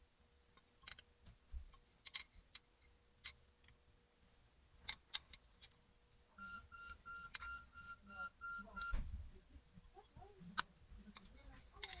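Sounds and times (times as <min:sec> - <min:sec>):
light clicks of small parts: 0:00.5 - 0:03.8, 0:04.7 - 0:06.3, 0:09.8 - 0:12.0.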